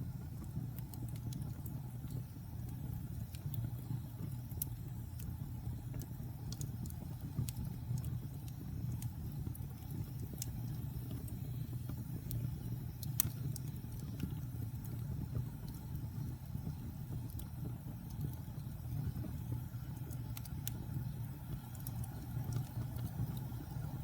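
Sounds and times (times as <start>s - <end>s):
fire crackling and popping: 0.0s - 24.0s
low rumble of flames: 0.0s - 24.0s.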